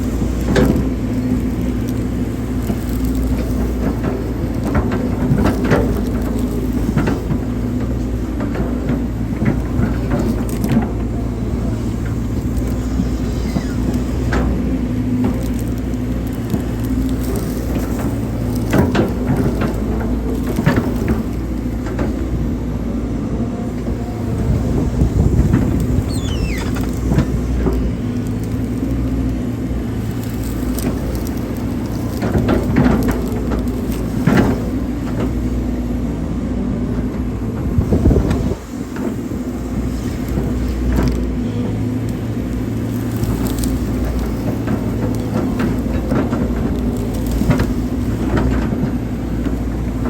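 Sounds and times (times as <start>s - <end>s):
excavator engine running: 0.0s - 50.0s
brief squeal: 13.0s - 14.0s, 26.0s - 27.2s.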